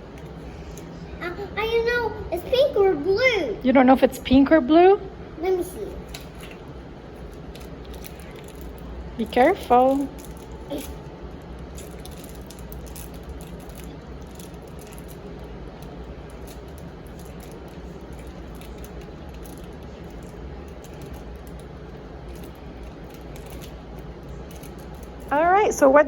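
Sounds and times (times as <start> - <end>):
steady low hum: 0.0 - 26.0
plastic packaging crinkling: 6.0 - 25.5.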